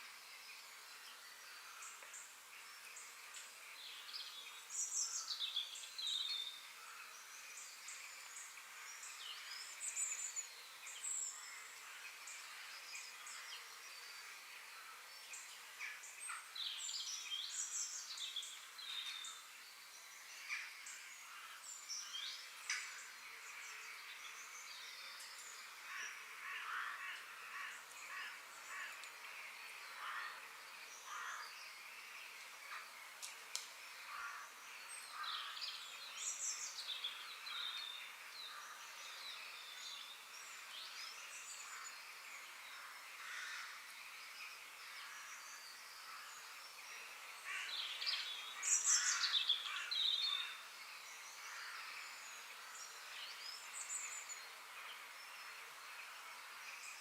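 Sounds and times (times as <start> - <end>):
steady background hiss: 0.0 - 57.0
birds chirping and calling: 45.6 - 50.6.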